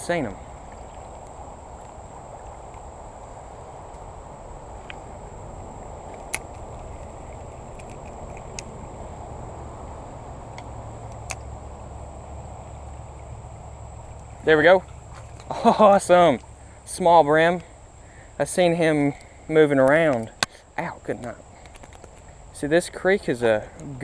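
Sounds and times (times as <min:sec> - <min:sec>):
high insect drone: 0:00.0 - 0:24.0
sharp clicks: 0:06.0 - 0:08.7, 0:10.5 - 0:11.5, 0:21.2 - 0:22.3.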